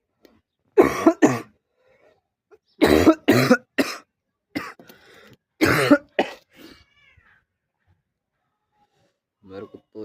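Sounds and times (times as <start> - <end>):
man coughing: 0.8 - 1.5, 2.8 - 4.8, 5.6 - 6.4.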